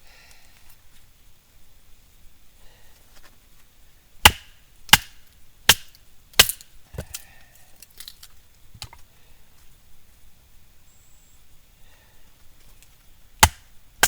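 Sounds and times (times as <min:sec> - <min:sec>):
axe blows splitting firewood: 0:04.2 - 0:07.2, 0:13.4 - 0:13.7
wood pieces clicking: 0:06.4 - 0:08.4.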